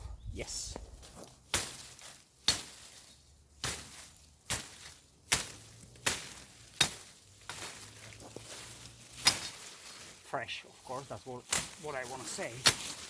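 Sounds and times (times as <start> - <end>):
machete chopping wood: 3.6 - 7.7, 9.2 - 9.6, 12.6 - 13.0.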